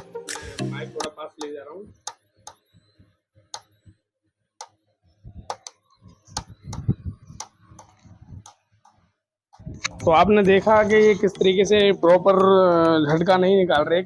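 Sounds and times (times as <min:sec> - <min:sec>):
electric fence energizer ticking: 0:00.0 - 0:04.0.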